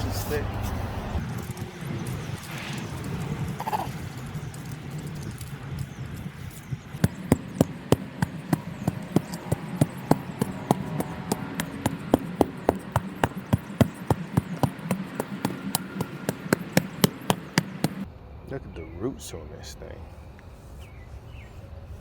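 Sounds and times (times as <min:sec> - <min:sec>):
steady low hum: 0:01.2 - 0:18.1
hand tool hacking at roots: 0:06.9 - 0:18.0.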